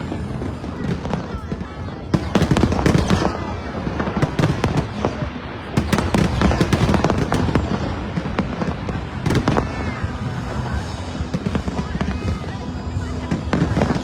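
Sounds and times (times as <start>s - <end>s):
fireworks cracks and bangs: 0.0s - 14.0s.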